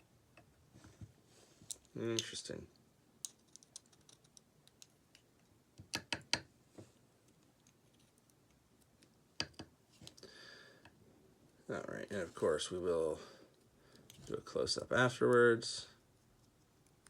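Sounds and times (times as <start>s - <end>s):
metal lock parts clicking: 3.2s - 5.2s.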